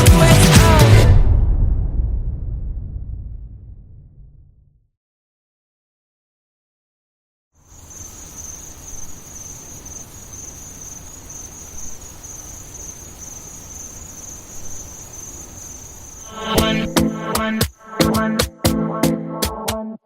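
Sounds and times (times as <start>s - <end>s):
low rumble: 0.8s - 4.9s.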